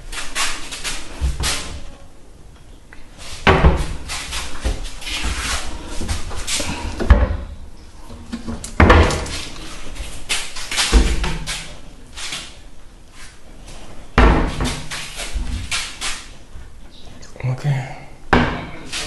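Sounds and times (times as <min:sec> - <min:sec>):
cabinet doors knocking and banging: 0:03.4 - 0:04.0, 0:08.8 - 0:09.4, 0:14.2 - 0:14.9, 0:18.3 - 0:18.8.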